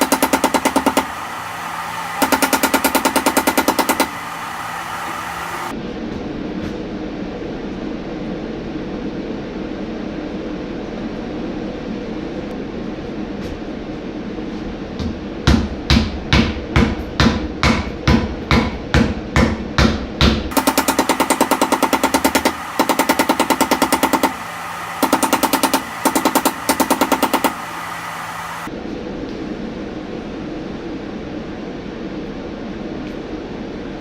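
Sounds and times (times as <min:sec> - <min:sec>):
steady hum: 0:00.0 - 0:05.7, 0:20.5 - 0:28.7.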